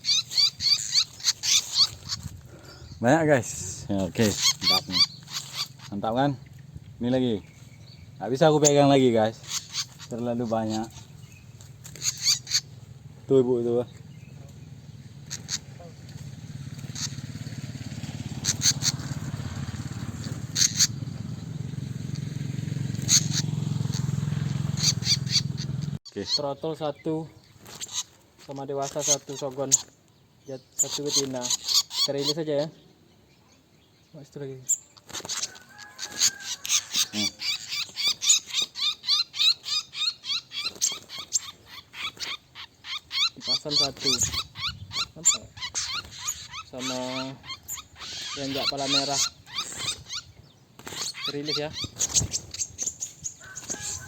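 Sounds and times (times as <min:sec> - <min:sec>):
high bird chirps: 0:00.0 - 0:54.0
small engine running: 0:09.4 - 0:26.0.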